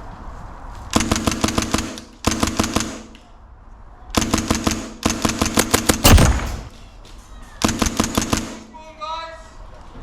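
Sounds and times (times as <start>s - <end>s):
airsoft rifle full-auto firing: 4.2s - 6.9s
loud deep thump: 6.1s - 6.8s.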